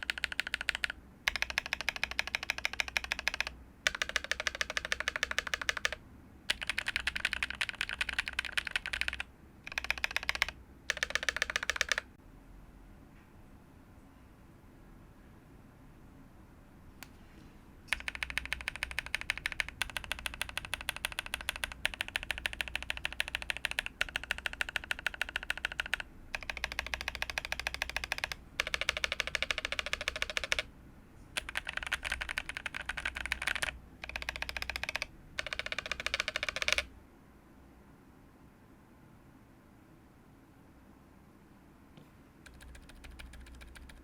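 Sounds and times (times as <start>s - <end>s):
fast typing on mechanical keyboard: 0.0s - 12.1s, 17.9s - 30.7s, 31.4s - 36.9s, 42.4s - 44.0s.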